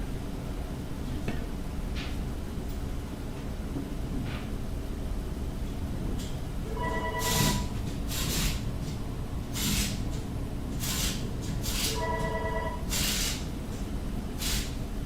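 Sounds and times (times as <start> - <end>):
electronic telephone ring: 6.8 - 7.7, 11.9 - 12.9
loud hissing bursts: 10.8 - 11.9, 12.9 - 13.4, 14.4 - 14.8.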